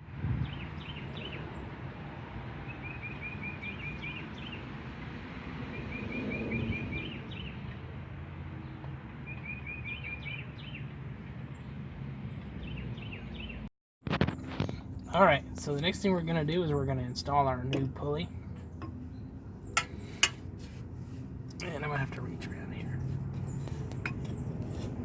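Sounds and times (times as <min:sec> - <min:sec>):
songbird chirping: 0:08.6 - 0:10.9, 0:14.9 - 0:20.5
low outdoor rumble: 0:14.3 - 0:25.0.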